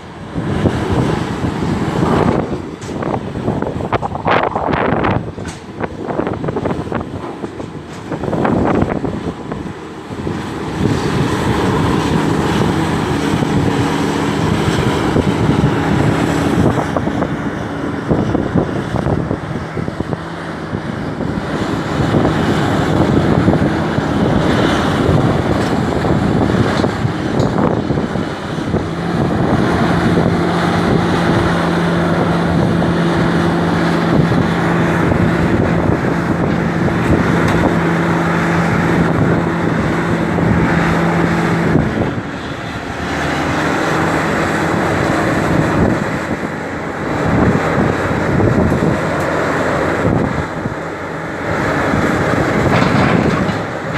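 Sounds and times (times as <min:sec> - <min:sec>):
excavator diesel engine drone: 0:00.0 - 0:53.9
wind buffeting microphone: 0:00.0 - 0:53.9.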